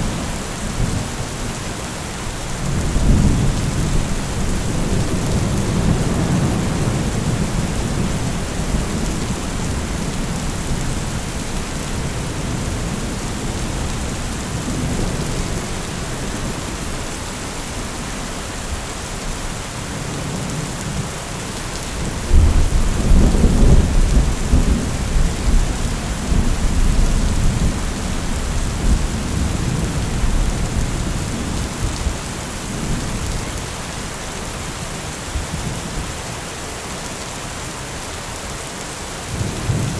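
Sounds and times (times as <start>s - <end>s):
steady rain: 0.0s - 39.9s
rolling thunder: 22.3s - 32.1s.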